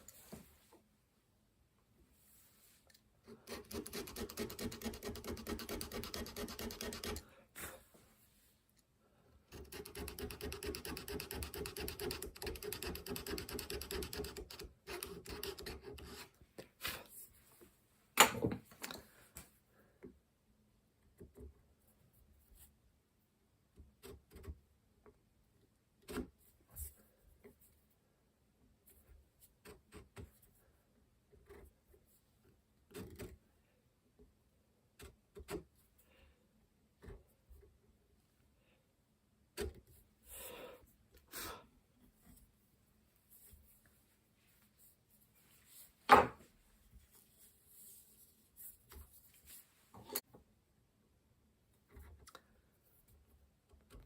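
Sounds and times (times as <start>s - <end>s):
file rasping on steel: 3.3s - 7.2s.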